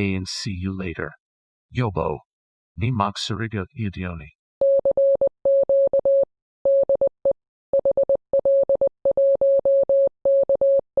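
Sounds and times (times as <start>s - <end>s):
morse code beeps: 4.6s - 11.0s.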